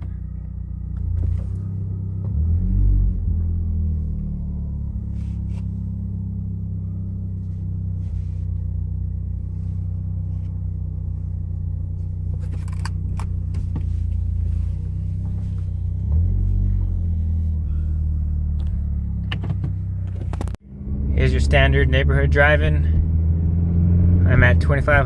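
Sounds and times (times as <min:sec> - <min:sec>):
car exhaust drone inside cabin: 0:00.0 - 0:25.0.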